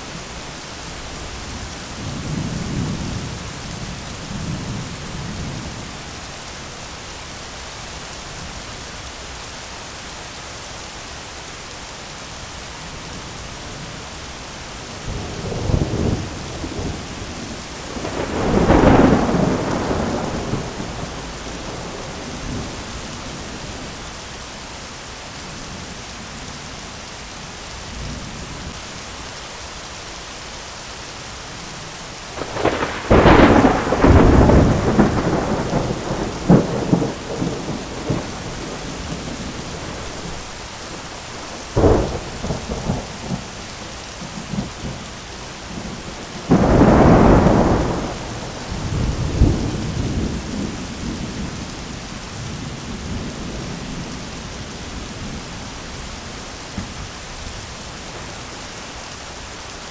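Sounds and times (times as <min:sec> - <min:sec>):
steady rain: 0:00.0 - 0:59.9
rolling thunder: 0:15.1 - 0:24.0, 0:32.4 - 0:40.6, 0:41.4 - 0:45.0, 0:45.7 - 0:55.6.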